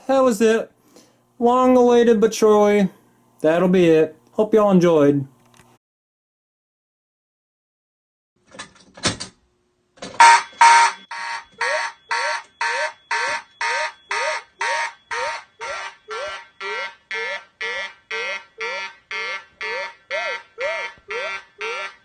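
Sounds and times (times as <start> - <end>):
fire alarm horns pulsing: 10.2 - 22.0.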